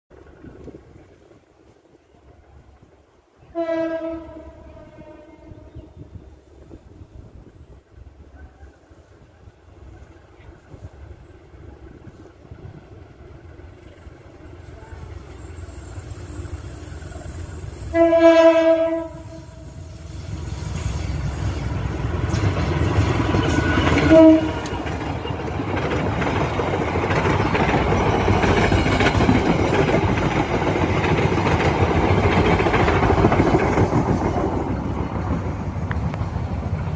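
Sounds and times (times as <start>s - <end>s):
locomotive horn blasts: 3.5s - 5.7s, 17.8s - 20.1s, 23.5s - 24.8s
train wheels rumbling and clattering: 5.7s - 36.9s.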